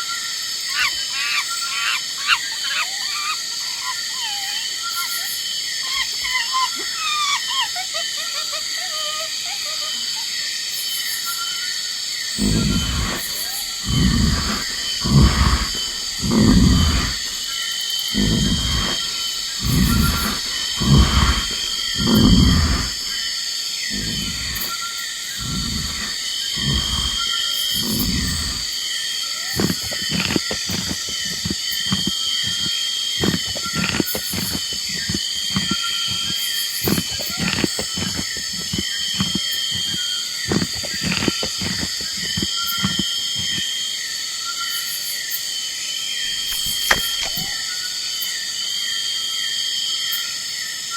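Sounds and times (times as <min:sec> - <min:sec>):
low animal grunt or roar: 0:12.4 - 0:43.6, 0:46.3 - 0:47.6.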